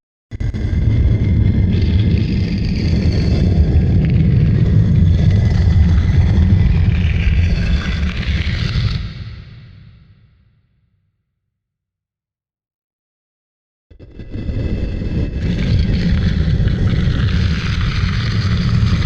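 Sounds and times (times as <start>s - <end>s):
stone block grinding over stone: 14.6s - 19.0s.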